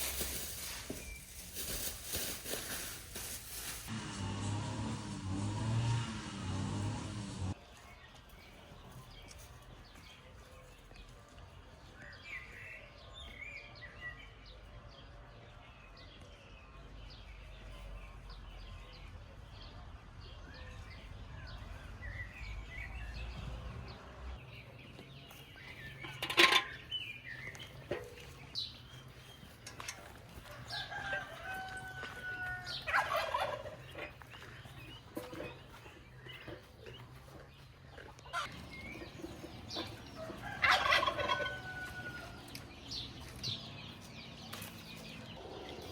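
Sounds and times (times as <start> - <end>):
poultry calling: 29.8 - 42.6.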